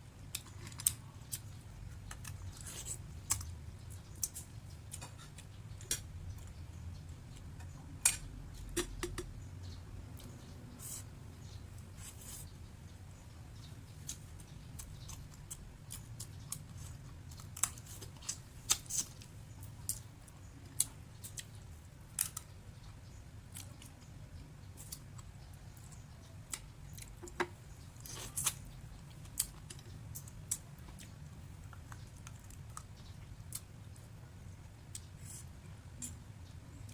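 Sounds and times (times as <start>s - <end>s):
low steady hum: 0.0s - 36.9s
crunchy food being chewed: 0.2s - 6.6s, 13.6s - 34.1s.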